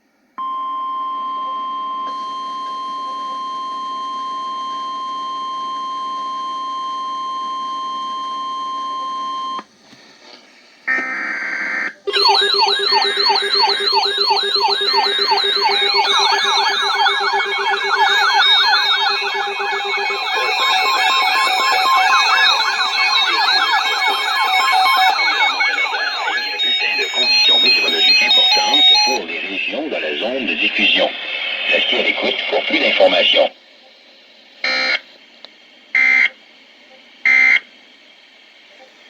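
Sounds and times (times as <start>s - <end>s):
steady alarm tone: 0.4s - 9.6s, 10.9s - 29.3s, 34.6s - 35.0s, 37.3s - 37.6s
warbling siren tones: 12.1s - 29.2s
noise burst: 12.1s - 33.5s.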